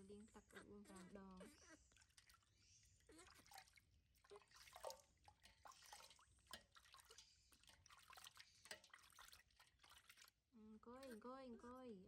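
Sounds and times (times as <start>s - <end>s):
water dripping and splashing: 1.9s - 2.6s, 3.2s - 10.4s.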